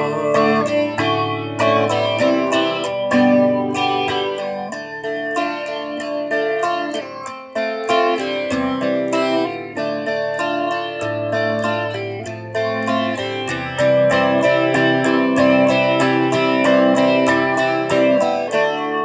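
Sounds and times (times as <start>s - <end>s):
person singing: 0.0s - 4.8s
guitar picking notes: 0.0s - 19.0s.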